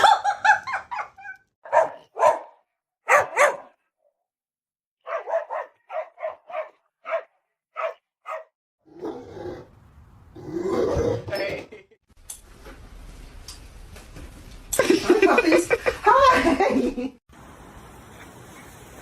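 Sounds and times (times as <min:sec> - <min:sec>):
dog barking: 0:00.9 - 0:03.8, 0:05.0 - 0:08.5.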